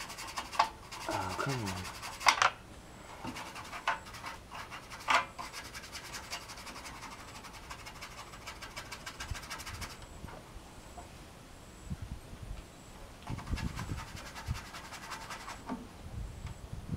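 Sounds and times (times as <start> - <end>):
scrubbing on plastic case: 3.3 - 10.0.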